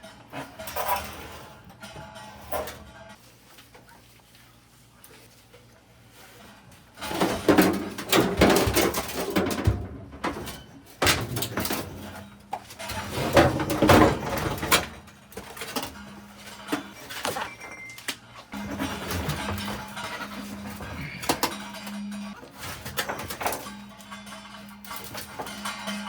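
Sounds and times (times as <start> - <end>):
heavy objects knocking and clattering: 7.0 - 17.8, 18.5 - 26.0.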